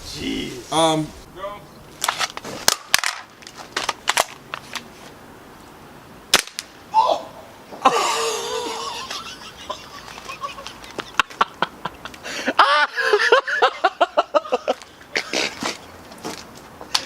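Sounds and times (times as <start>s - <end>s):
loud gun crack: 6.3s - 6.8s
person crying out: 6.9s - 8.9s.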